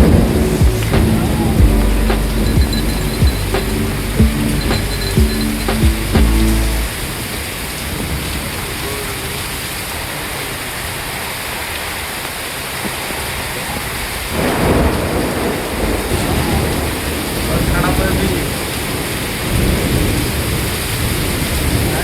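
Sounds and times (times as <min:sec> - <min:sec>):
thunder rumble: 0:00.0 - 0:07.2, 0:14.3 - 0:21.9
steady rain: 0:00.0 - 0:22.0.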